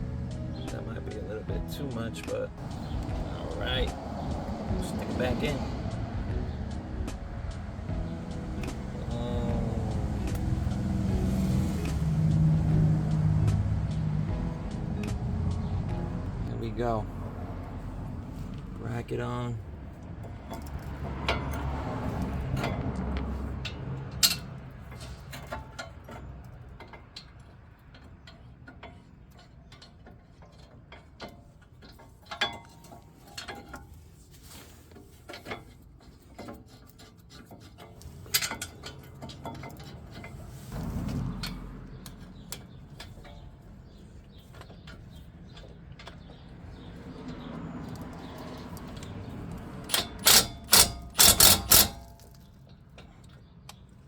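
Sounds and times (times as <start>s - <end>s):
sharp metal knocks: 0.3s - 16.9s, 44.6s - 52.4s
hand tools clinking on metal: 20.2s - 34.1s, 35.2s - 54.0s
ratchet clicks: 47.2s - 52.6s.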